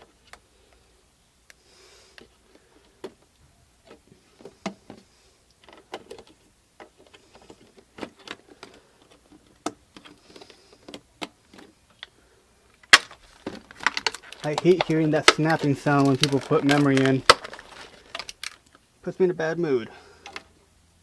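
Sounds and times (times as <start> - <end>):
plastic computer parts clicking: 12.8 - 18.8.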